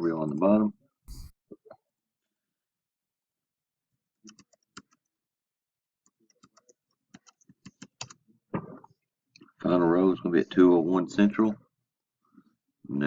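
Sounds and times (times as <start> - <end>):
keyboard and mouse clicks: 1.1 - 1.3.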